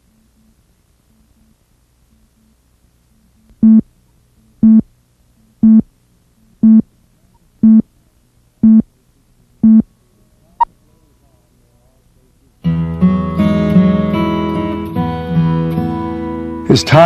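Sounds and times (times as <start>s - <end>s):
faint low hum: 0.0s - 13.3s
short electronic countdown beeps: 3.6s - 3.8s, 4.6s - 4.9s, 5.6s - 5.9s, 6.6s - 6.8s, 7.6s - 7.8s, 8.6s - 8.8s, 9.6s - 9.8s.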